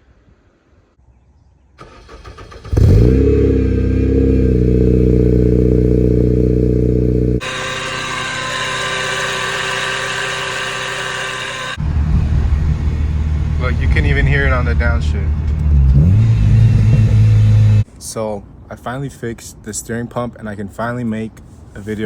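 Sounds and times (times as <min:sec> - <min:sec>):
car engine fast idle: 0:01.8 - 0:15.2
thin whine: 0:04.6 - 0:17.8
starter motor cranking: 0:07.4 - 0:11.8.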